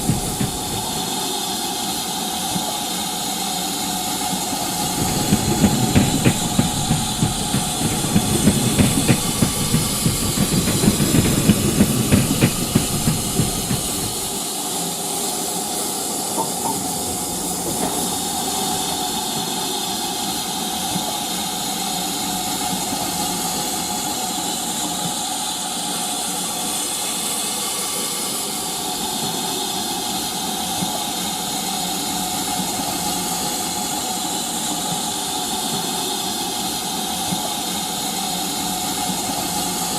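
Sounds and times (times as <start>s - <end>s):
constant hum: 0.0s - 1.3s, 4.4s - 14.4s
model steam locomotive chuffing: 0.0s - 39.9s
steady steam hiss: 0.0s - 39.9s.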